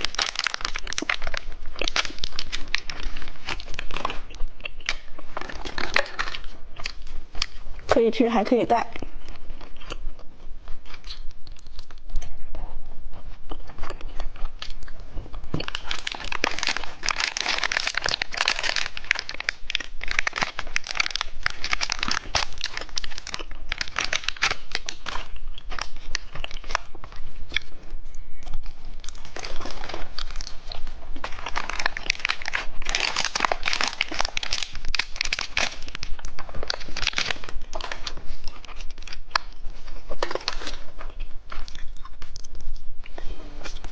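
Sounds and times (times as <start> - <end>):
candy wrapper crinkling: 0.0 - 7.6, 15.5 - 27.7, 28.9 - 43.9.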